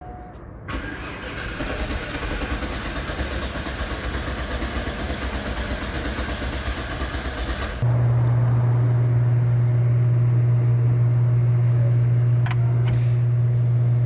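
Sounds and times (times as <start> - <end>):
engine starting and running: 0.7 - 11.6.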